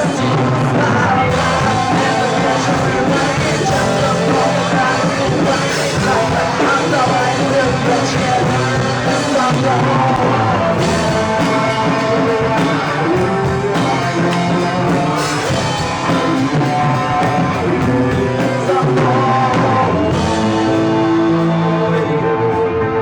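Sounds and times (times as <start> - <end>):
live pop-rock band: 0.0 - 23.0
person singing: 0.0 - 23.0.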